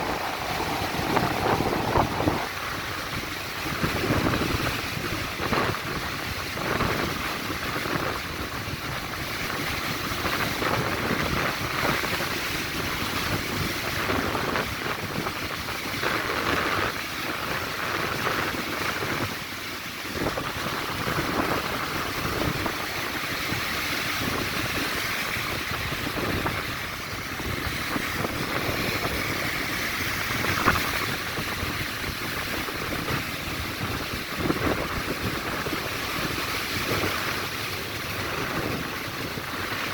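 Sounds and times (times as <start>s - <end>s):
big waves breaking: 0.0s - 39.9s
wind gusting across microphone: 0.0s - 39.9s.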